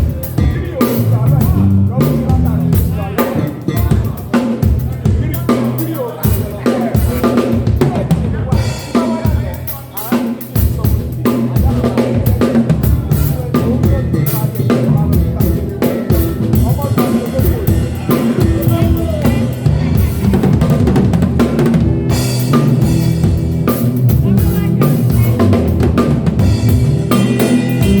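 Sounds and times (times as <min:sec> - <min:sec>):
drum kit playing: 0:00.0 - 0:28.0
sustained guitar notes: 0:00.4 - 0:03.9, 0:14.8 - 0:28.0
sustained keyboard notes: 0:13.1 - 0:28.0.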